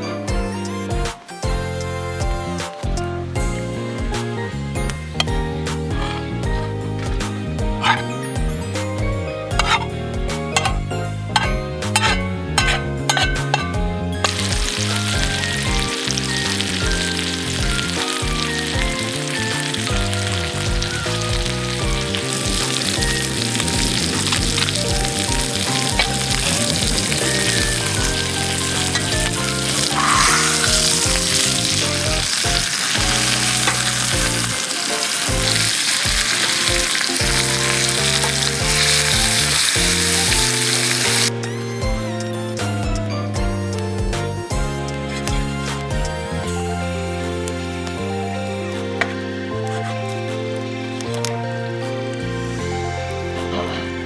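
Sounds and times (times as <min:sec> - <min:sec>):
music with bass line: 0:00.0 - 0:54.0
food sizzling in a pan: 0:14.3 - 0:41.3.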